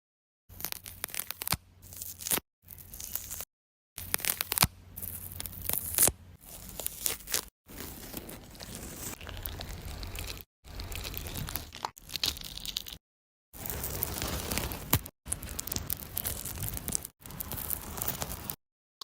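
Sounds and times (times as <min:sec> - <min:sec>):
crackling tearing with clicks: 0:03.0 - 0:04.7, 0:13.6 - 0:18.6.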